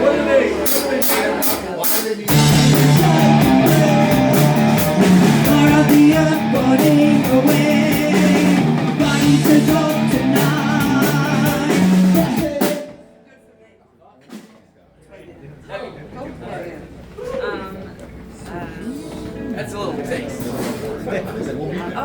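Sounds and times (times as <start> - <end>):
rock band playing: 0.0 - 13.2.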